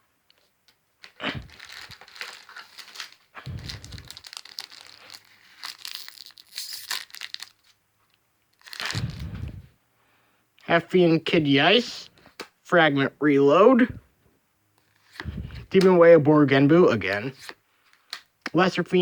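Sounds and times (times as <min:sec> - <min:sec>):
foil wrapper tearing and crinkling: 0:01.0 - 0:07.8, 0:08.5 - 0:09.2.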